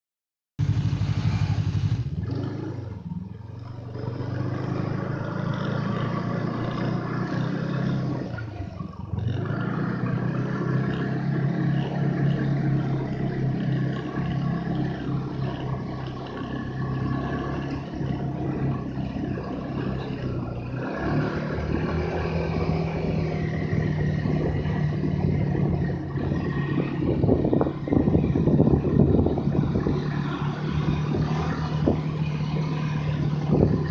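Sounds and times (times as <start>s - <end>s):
snowmobile engine revving: 0.6s - 3.1s, 3.8s - 33.9s.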